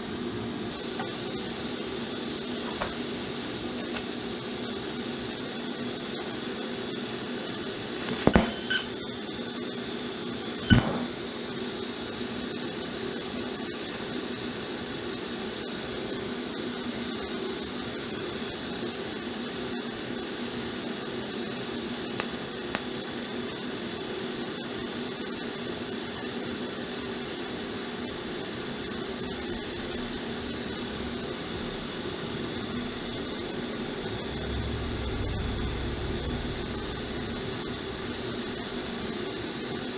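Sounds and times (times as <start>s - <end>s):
welder arc humming: 0.0s - 39.9s
welding arc cracks: 3.8s - 4.2s, 8.0s - 9.0s, 10.6s - 11.2s.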